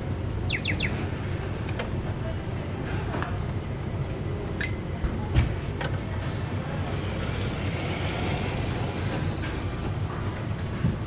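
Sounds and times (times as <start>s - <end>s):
miniature train running on rail: 6.2s - 10.6s
steady low rumble: 6.2s - 10.6s.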